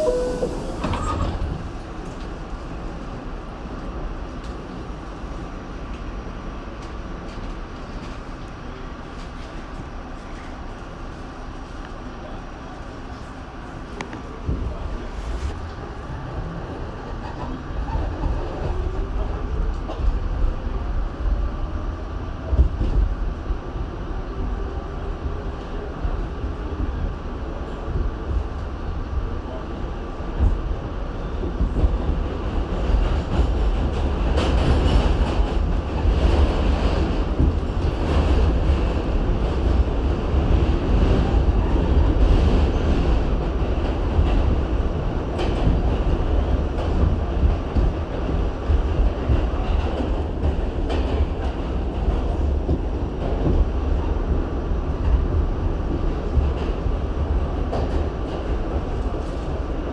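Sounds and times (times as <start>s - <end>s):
subway train motor whine: 0.0s - 2.3s.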